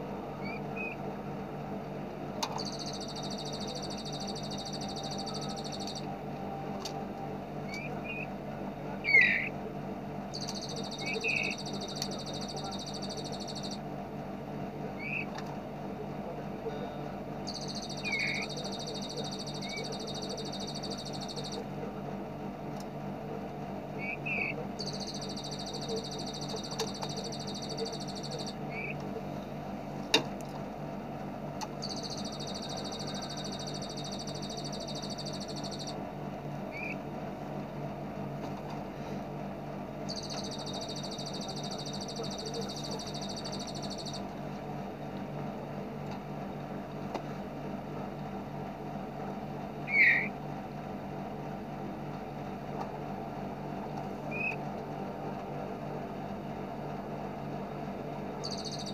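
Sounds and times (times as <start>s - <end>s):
bird chirps: 2.6s - 6.1s, 9.1s - 9.5s, 10.4s - 13.8s, 17.5s - 21.6s, 24.0s - 29.0s, 31.8s - 36.0s, 40.1s - 44.2s, 49.9s - 50.3s, 58.4s - 58.9s
bird rattling trill: 17.5s - 21.6s, 24.8s - 28.9s, 31.8s - 35.9s, 40.1s - 44.2s, 58.4s - 58.9s.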